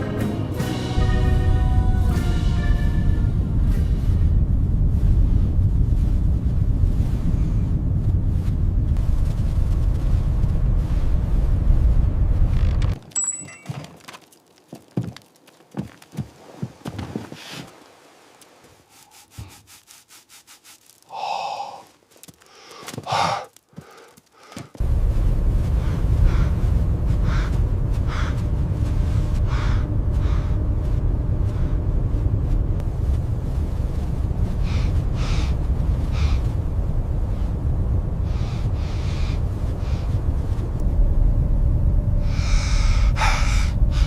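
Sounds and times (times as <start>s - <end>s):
blizzard wind rushing: 0.0s - 13.0s, 20.7s - 44.0s
heavy breathing and gasps: 21.1s - 24.8s, 42.3s - 44.0s.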